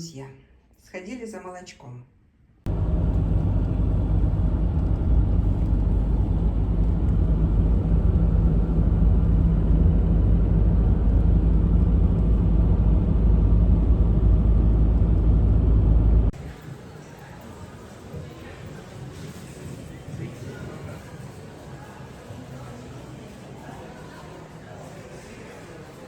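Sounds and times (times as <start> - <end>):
car engine and road noise: 2.7 - 16.4.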